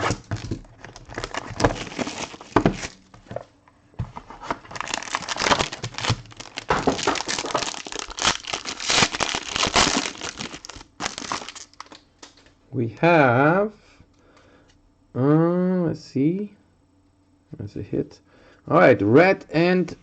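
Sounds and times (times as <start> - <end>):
plastic wrapping crinkling and tearing: 0.0 - 3.4, 4.2 - 12.4.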